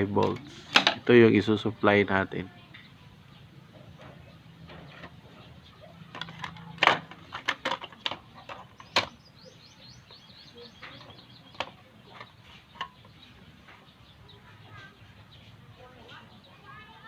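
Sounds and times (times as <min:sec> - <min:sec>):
bird twittering: 0:08.4 - 0:17.0.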